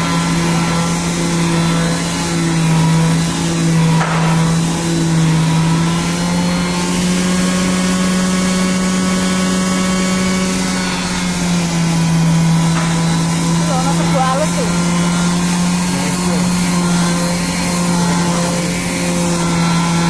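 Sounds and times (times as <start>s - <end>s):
motor humming steadily: 0.0s - 20.0s.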